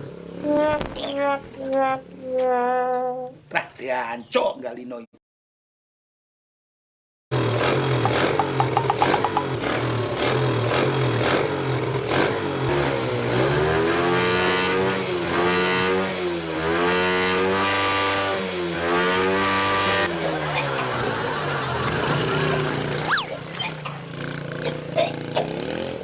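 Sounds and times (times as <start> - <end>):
motorcycle engine revving: 0.0 - 1.6, 7.3 - 26.0.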